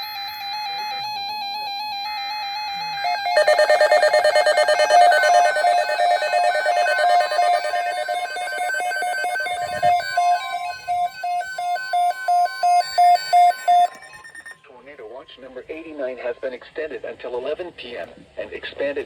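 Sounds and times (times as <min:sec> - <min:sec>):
electronic alarm beeps and warbles: 0:03.0 - 0:14.6
steady alert tone: 0:03.2 - 0:14.0.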